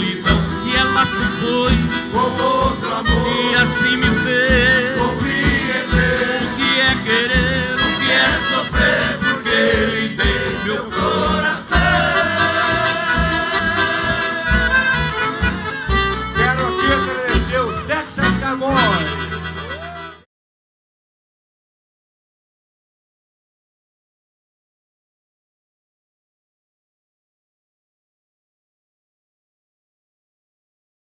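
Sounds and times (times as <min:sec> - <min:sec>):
live band playing country music: 0:00.0 - 0:20.2.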